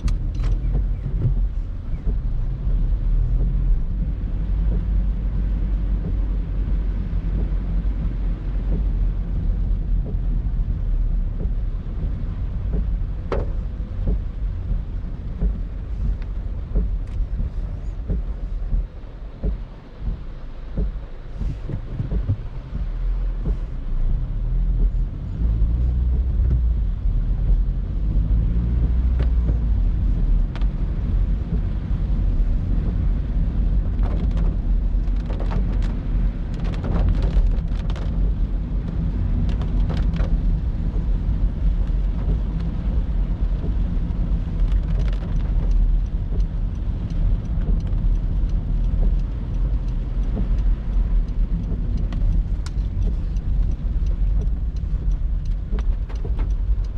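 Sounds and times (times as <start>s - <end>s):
car engine rumble: 0.0s - 56.9s
road noise: 0.0s - 56.9s
sharp ticks: 44.6s - 56.9s.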